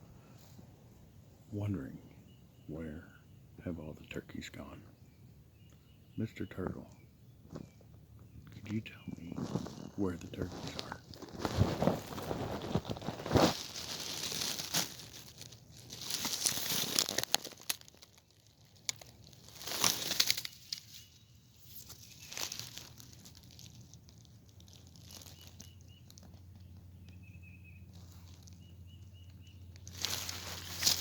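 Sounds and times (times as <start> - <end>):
dry leaves rustling and crunching: 9.3 - 27.2, 27.8 - 31.0.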